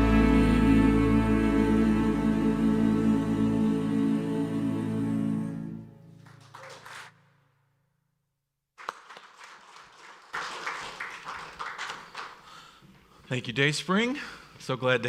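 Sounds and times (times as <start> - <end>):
held musical chord: 0.0 - 6.1
congregation applause: 6.1 - 7.3, 8.8 - 12.7.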